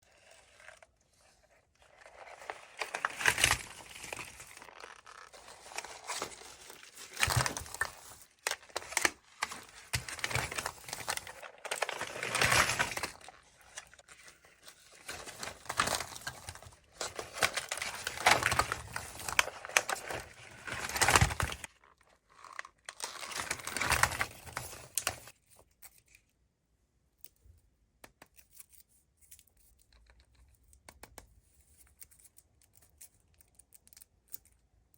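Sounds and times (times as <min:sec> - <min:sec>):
foil wrapper crinkling and tearing: 0:01.8 - 0:25.4.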